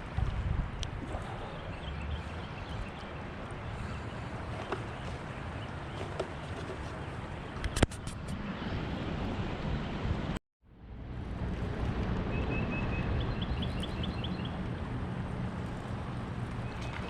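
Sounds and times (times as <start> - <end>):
wind buffeting microphone: 0.0 - 10.4
water noise: 0.0 - 17.0.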